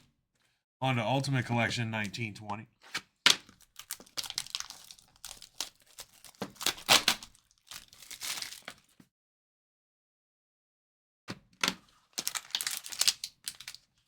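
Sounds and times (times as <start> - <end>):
plastic wrap crinkling and tearing: 3.5 - 9.0, 12.1 - 14.0.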